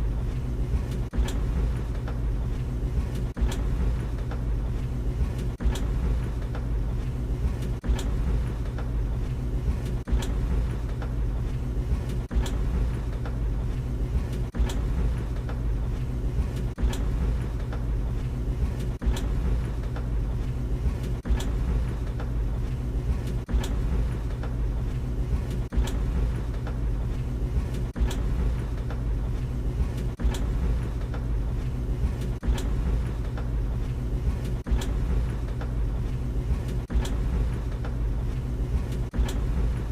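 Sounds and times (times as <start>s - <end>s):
tumble dryer humming: 0.0s - 39.9s
dryer knocks and clicks: 0.8s - 2.2s, 3.0s - 4.5s, 5.2s - 6.8s, 7.4s - 9.0s, 9.6s - 11.2s, 11.9s - 13.4s, 14.2s - 15.7s, 16.5s - 17.9s, 18.7s - 20.2s, 20.8s - 22.4s, 23.1s - 26.8s, 27.6s - 29.1s, 29.8s - 31.3s, 32.0s - 33.6s, 34.3s - 35.8s, 36.5s - 38.0s, 38.8s - 39.9s.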